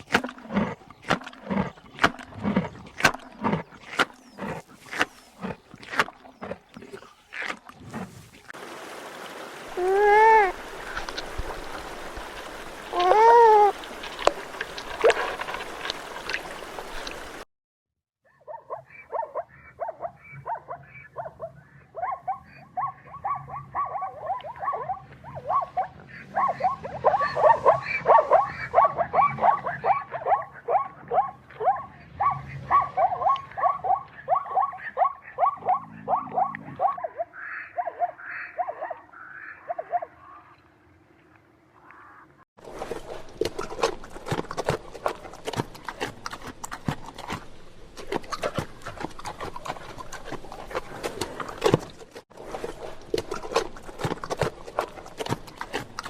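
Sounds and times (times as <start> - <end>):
animal squeaky calls: 9.8 - 10.6, 12.9 - 13.8.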